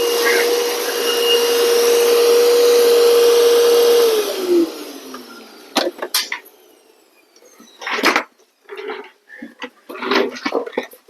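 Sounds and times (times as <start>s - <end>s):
electric air blower running: 0.0s - 7.4s.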